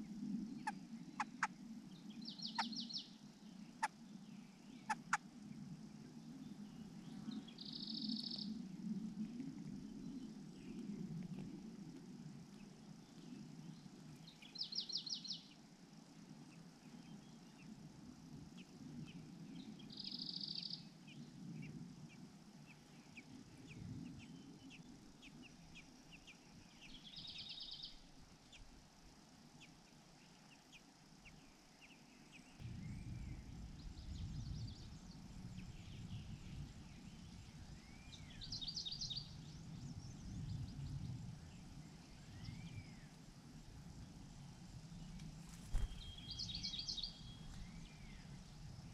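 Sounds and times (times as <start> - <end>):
small birds chirping: 0.6 - 5.2, 12.4 - 15.6, 18.5 - 48.9
low background rumble: 20.9 - 48.9.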